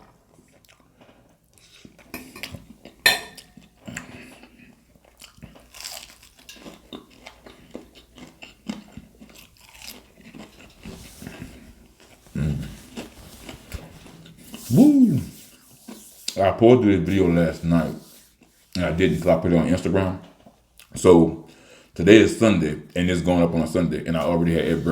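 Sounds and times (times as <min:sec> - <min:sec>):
chewing crunchy fried food: 0:00.0 - 0:14.8.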